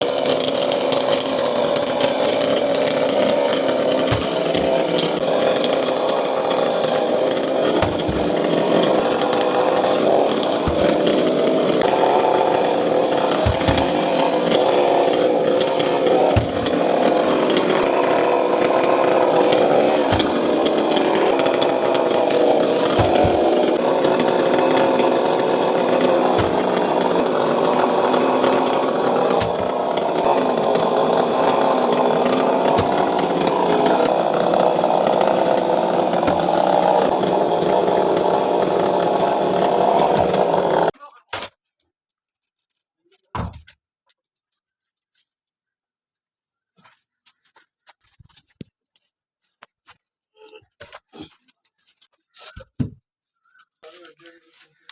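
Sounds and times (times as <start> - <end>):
chainsaw cutting wood: 0.0 - 41.5.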